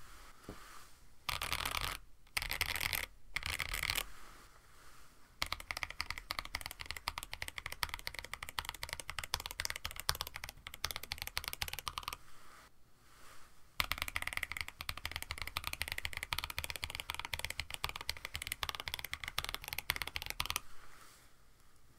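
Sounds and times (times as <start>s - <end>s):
fast typing on mechanical keyboard: 1.3s - 4.0s, 5.4s - 12.2s, 13.8s - 20.6s.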